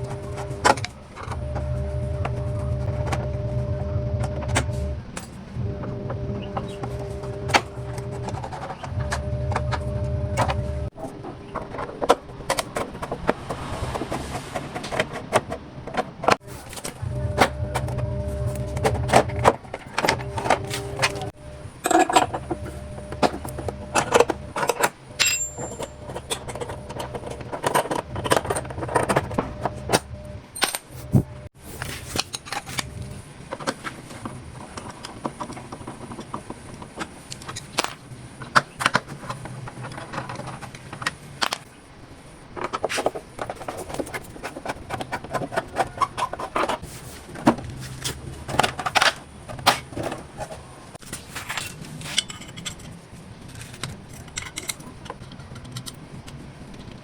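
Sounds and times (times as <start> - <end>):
low steady hum: 0.0 - 35.5.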